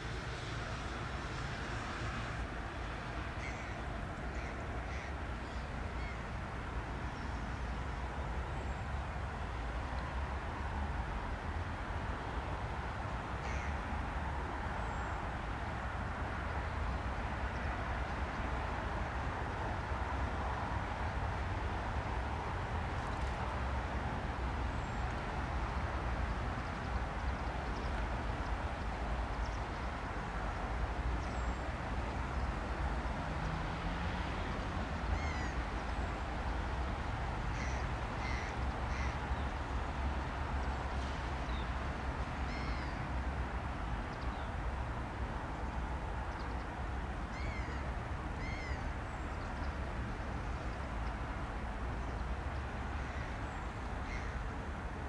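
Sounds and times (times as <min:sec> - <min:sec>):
birds' harsh calls: 0:37.5 - 0:39.2, 0:48.4 - 0:48.8.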